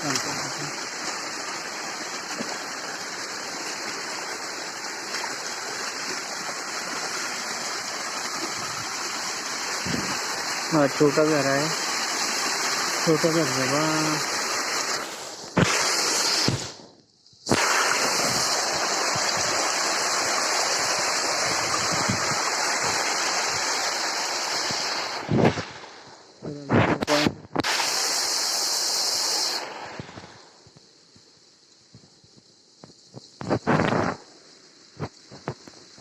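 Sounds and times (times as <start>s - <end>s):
waterfall rushing: 0.0s - 16.7s, 17.5s - 25.3s.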